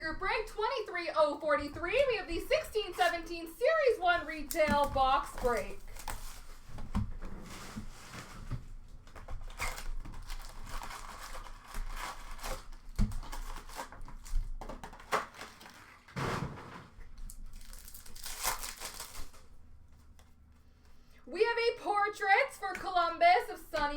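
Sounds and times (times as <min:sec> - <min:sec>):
wrappers crinkling and tearing: 0:05.1 - 0:06.6, 0:09.4 - 0:16.2, 0:17.2 - 0:19.6.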